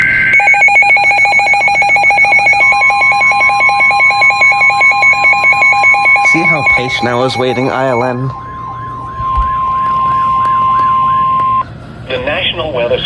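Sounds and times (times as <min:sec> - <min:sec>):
rapidly pulsing alarm tone: 0:00.0 - 0:11.8
steady continuous tone: 0:00.0 - 0:13.0
data-burst screech: 0:04.5 - 0:11.6.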